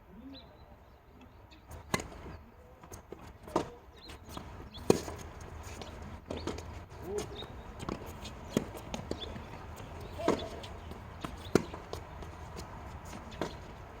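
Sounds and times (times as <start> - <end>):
tennis balls bouncing on court: 1.7 - 14.0
tennis balls hit with rackets: 1.9 - 2.2, 3.4 - 14.0.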